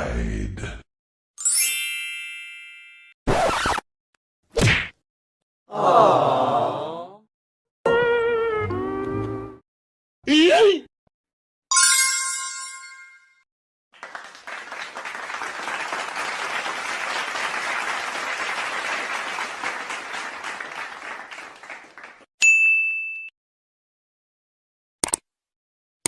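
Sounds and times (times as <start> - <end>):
crowd applauding: 14.0 - 22.3
bright ding: 22.4 - 23.3.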